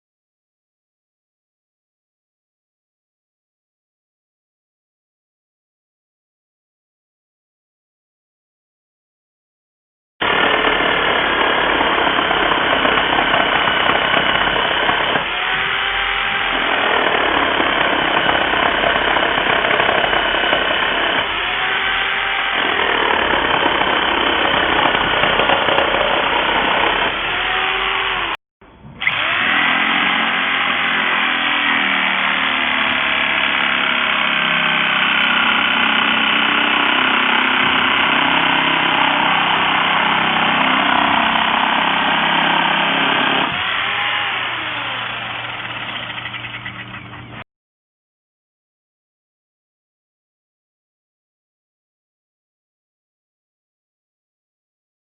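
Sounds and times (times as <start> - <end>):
reciprocating saw running: 10.2 - 47.4.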